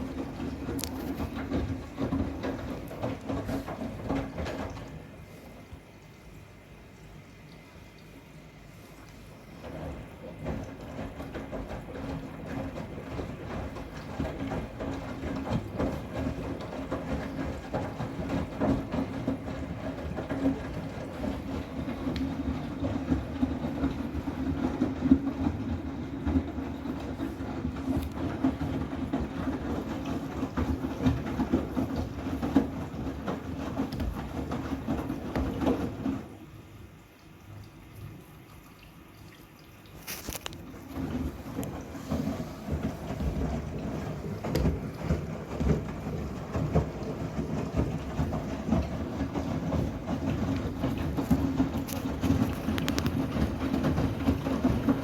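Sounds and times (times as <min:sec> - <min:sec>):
washing machine motor hum: 0:00.0 - 0:55.0
towels tumbling in drum: 0:09.6 - 0:36.6, 0:40.0 - 0:55.0.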